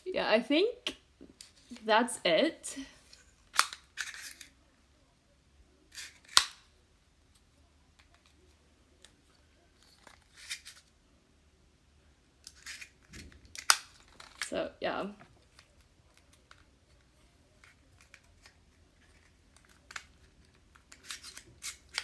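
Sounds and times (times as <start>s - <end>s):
small plastic parts clicking: 3.1s - 4.6s, 5.9s - 6.7s, 7.3s - 10.9s, 12.4s - 14.6s, 15.3s - 22.0s.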